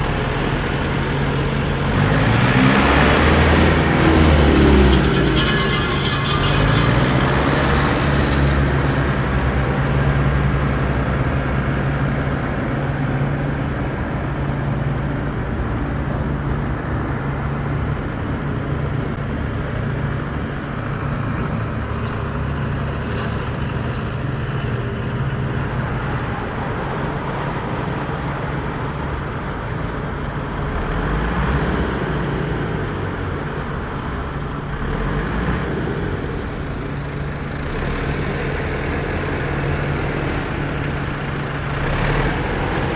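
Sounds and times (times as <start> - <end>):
rattling noise: 3.4 - 9.1.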